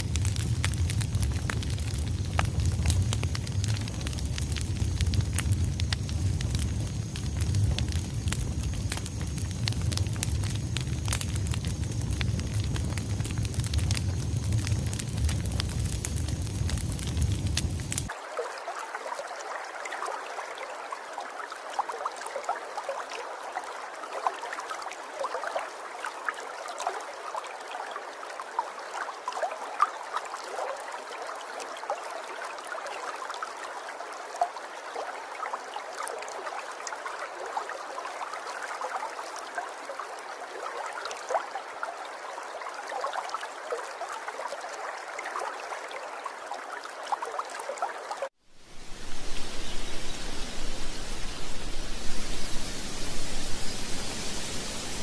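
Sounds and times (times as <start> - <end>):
babbling stream water: 18.1 - 55.0.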